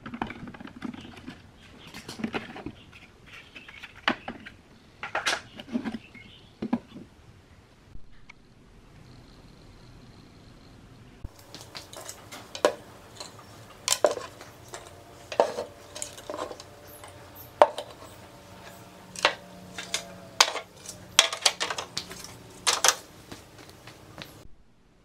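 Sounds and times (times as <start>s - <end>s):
metal objects clinking together: 11.3s - 23.1s.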